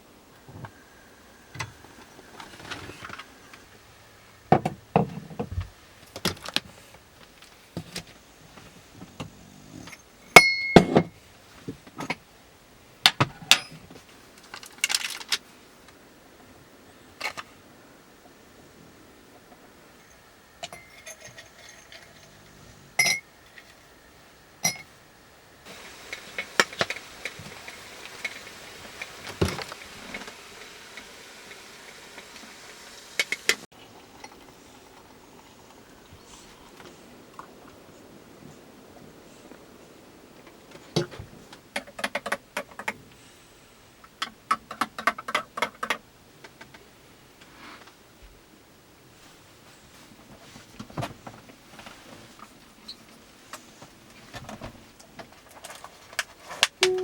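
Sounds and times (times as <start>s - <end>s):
steady hiss: 0.0s - 44.5s
ringing clink: 10.4s - 11.0s
household items knocking and clinking: 10.4s - 11.1s.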